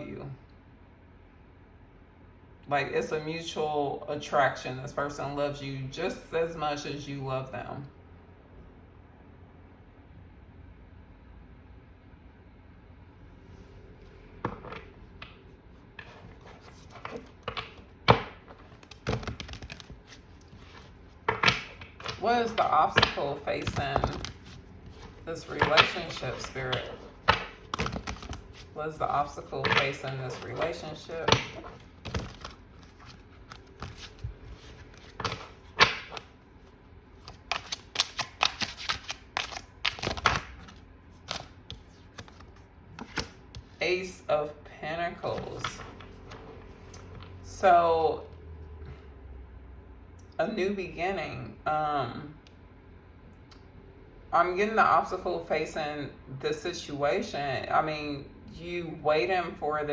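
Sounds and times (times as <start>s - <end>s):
cards knocking and tapping on table: 14.4s - 15.4s, 16.0s - 28.6s, 29.2s - 36.3s.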